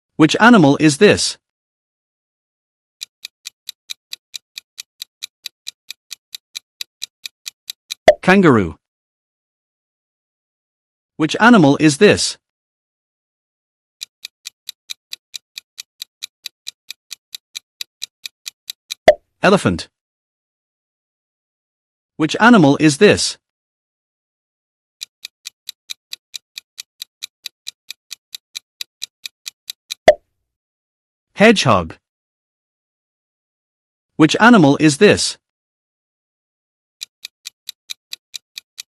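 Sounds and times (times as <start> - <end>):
fast clock ticks: 3.0 - 8.2, 14.0 - 19.2, 25.0 - 30.2, 37.0 - 38.9.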